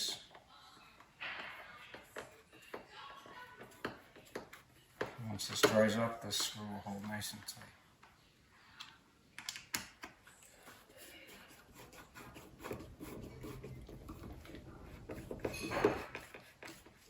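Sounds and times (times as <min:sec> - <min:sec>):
screw rubbing and grinding in wood: 0:10.9 - 0:17.0.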